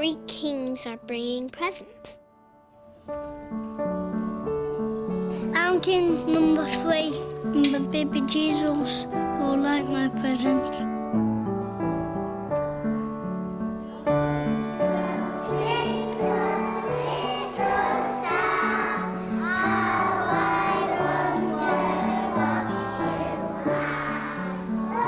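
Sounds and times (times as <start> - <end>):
instrumental accompaniment: 2.8 - 25.0
children's choir singing: 14.2 - 25.0.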